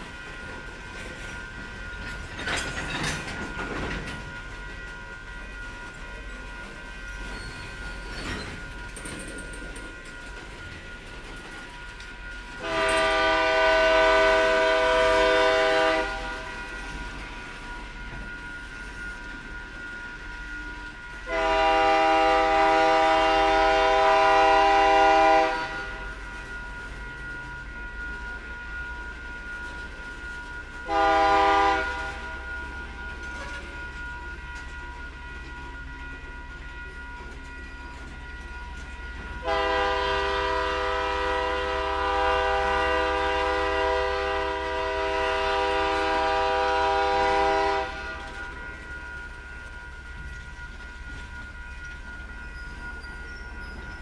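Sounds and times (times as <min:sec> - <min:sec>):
train wheels rumbling on rails: 0:00.0 - 0:54.0
metallic squeal or clank: 0:07.2 - 0:09.6
locomotive air horn blasts: 0:12.6 - 0:16.5, 0:21.3 - 0:26.0, 0:30.8 - 0:32.4, 0:39.4 - 0:48.3.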